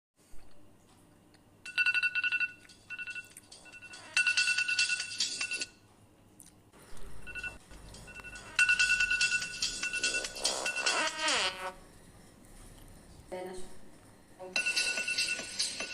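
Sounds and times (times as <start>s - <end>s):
electronic alarm beeping: 7.1s - 11.3s.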